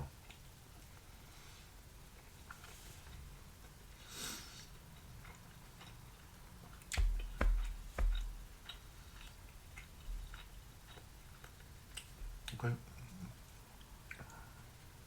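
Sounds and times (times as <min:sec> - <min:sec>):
soft chewing: 0:00.1 - 0:14.9
sharp taps with low thump: 0:06.9 - 0:08.6.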